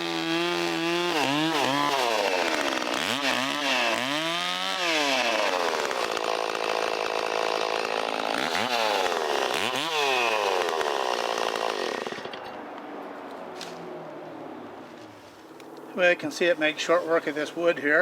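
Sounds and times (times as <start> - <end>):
chainsaw cutting wood: 0.0 - 12.6.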